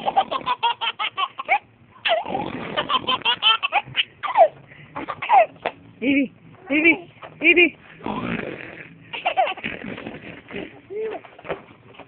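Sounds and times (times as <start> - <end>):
baby giggling: 0.0 - 5.8, 9.1 - 11.4.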